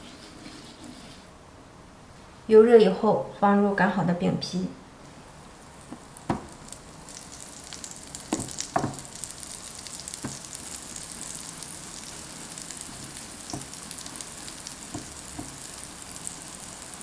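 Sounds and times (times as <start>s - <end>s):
oil sizzling under dough: 5.0s - 17.0s
light knocks of dough handling: 5.9s - 6.8s, 8.3s - 9.2s, 10.1s - 10.5s, 12.9s - 13.8s, 14.8s - 15.7s.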